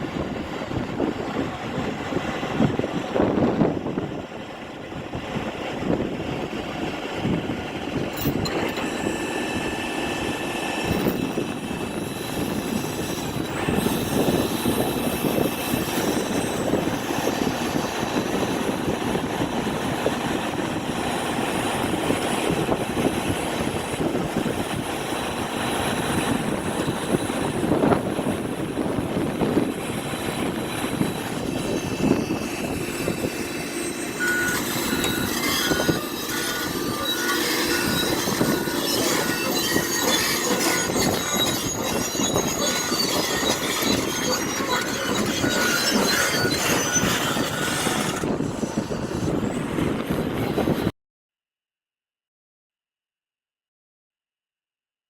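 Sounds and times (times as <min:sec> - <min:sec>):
heavy machinery engine rumble: 0:00.0 - 0:50.8
faint high whines: 0:30.7 - 0:49.8.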